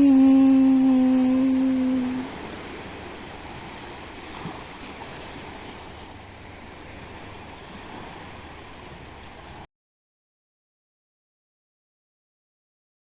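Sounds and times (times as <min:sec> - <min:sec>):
sea waves washing: 0:00.0 - 0:09.7.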